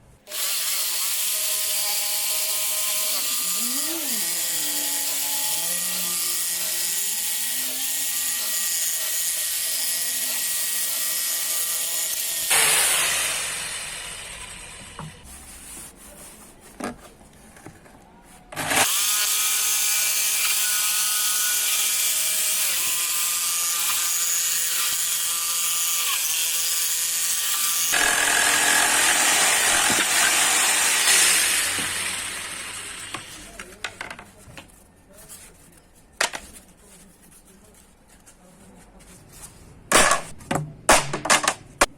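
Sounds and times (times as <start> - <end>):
power tool motor whine: 27.7 - 33.4.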